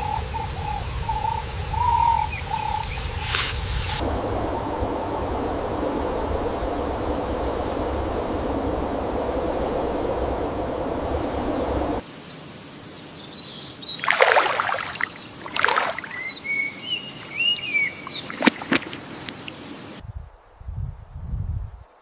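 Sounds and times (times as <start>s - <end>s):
birds chirping: 0.0s - 19.7s
steady rushing noise: 0.3s - 12.0s
rustling swishes: 3.0s - 12.0s
low rumble: 4.0s - 12.0s.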